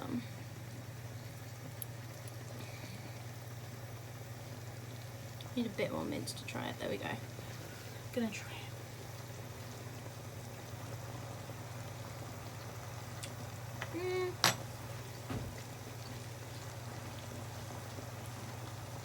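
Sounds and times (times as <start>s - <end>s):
pans bubbling: 0.0s - 19.0s
person humming: 13.9s - 14.4s.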